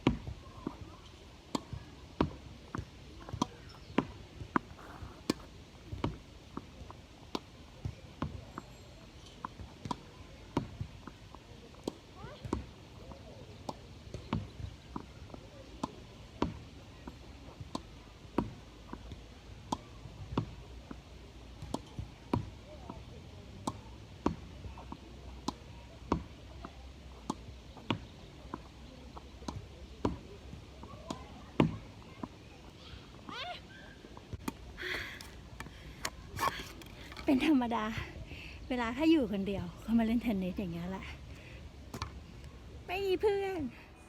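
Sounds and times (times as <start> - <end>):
tennis ball hitting racquet: 34.3 - 37.4, 41.9 - 42.2.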